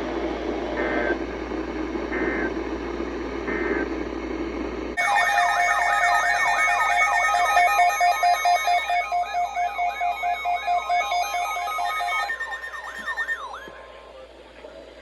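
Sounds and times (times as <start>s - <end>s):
radio static: 2.1s - 2.6s, 3.5s - 4.0s
two-tone digital data bursts: 5.0s - 13.7s
siren-like electronic alert tone: 5.0s - 14.0s.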